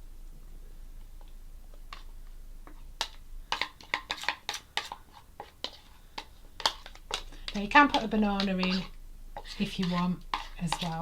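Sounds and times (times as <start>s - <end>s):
spoon scraping a bowl: 2.7s - 11.0s.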